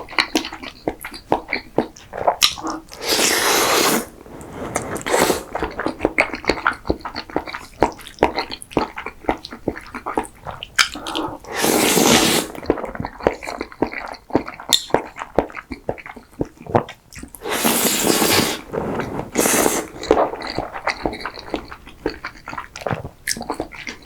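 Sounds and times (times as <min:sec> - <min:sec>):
loud slurps: 0:02.9 - 0:06.1, 0:11.1 - 0:12.8, 0:17.4 - 0:20.6
wet chewing and mouth smacking: 0:19.4 - 0:24.0.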